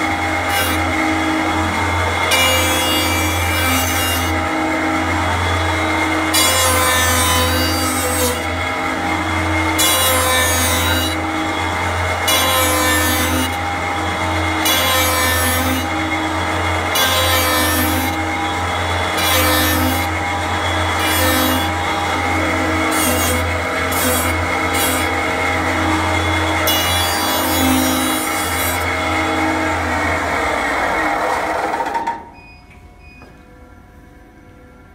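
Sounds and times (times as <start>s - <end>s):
cutter shaving spinning wood: 0.0s - 32.1s.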